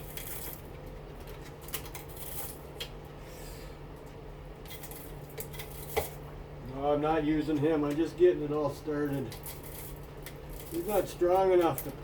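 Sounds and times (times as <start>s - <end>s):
metal parts clicking and scraping: 0.0s - 2.6s, 9.1s - 12.0s
steady low hum: 0.0s - 12.0s.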